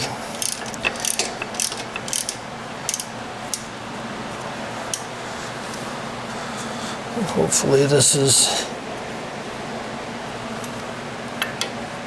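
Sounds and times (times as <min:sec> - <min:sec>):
hand ratchet clicking: 0:00.3 - 0:03.6.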